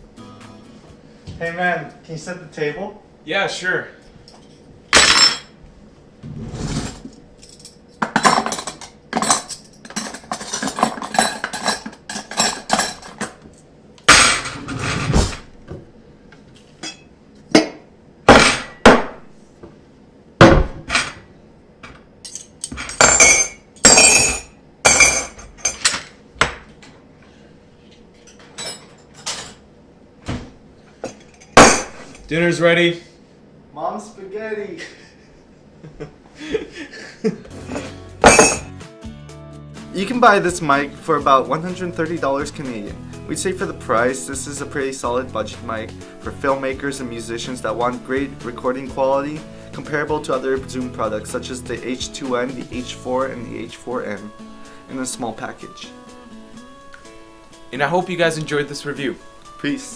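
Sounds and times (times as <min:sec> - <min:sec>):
cutlery clinking: 0:07.4 - 0:13.4, 0:38.2 - 0:38.7
dishes knocking on table: 0:20.4 - 0:21.0.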